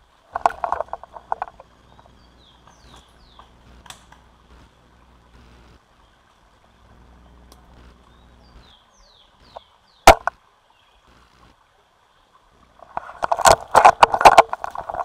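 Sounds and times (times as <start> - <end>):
airsoft rifle shot: 10.1 - 10.3
rustling: 12.7 - 15.0.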